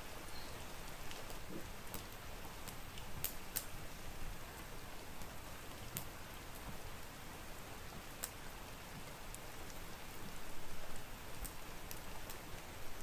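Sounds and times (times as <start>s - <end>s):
steady rain: 0.0s - 13.0s
wood fire crackling and popping: 0.0s - 13.0s.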